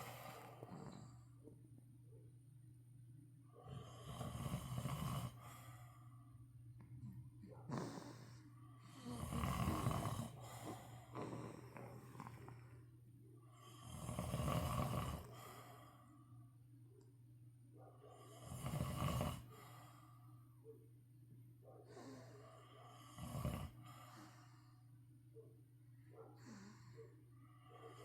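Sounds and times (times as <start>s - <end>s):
people snoring: 7.7s - 12.6s, 13.6s - 15.5s.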